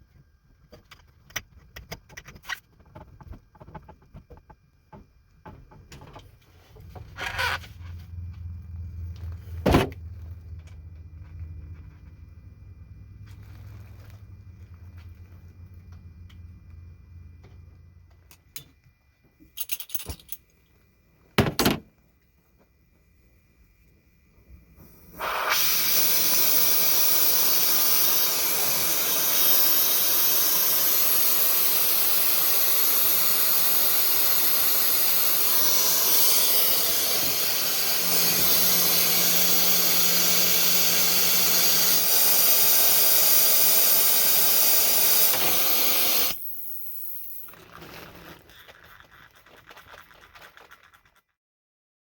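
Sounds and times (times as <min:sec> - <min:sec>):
gas hissing under pressure: 0:24.7 - 0:47.8.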